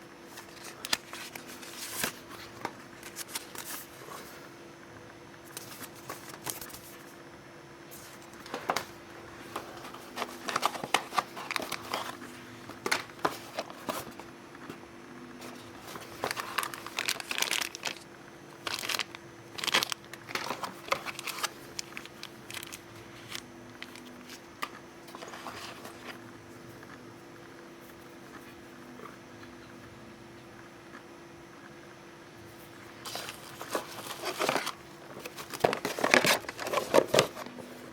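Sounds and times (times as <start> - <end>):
faint steady hum: 0.0 - 37.9
packaging crinkling: 9.8 - 14.2, 15.4 - 26.2, 33.0 - 37.6.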